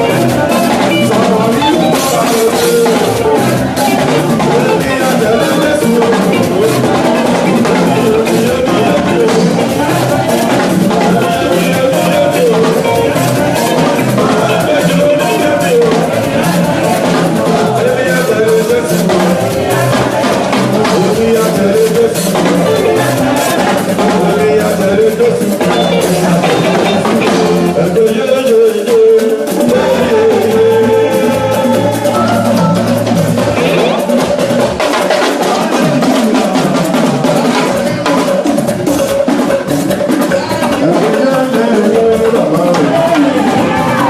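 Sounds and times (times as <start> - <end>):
drum kit and percussion beat: 0.0 - 44.0
live band music: 0.0 - 44.0.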